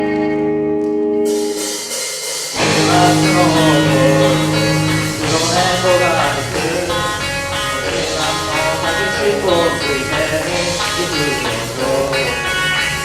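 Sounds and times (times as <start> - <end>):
band playing instrumental: 1.3 - 13.0
sliding wavering lead melody: 2.6 - 9.9
steady bass note: 2.6 - 13.0.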